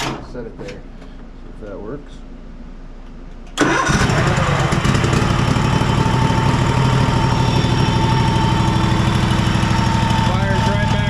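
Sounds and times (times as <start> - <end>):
riding mower engine running: 3.6 - 11.0.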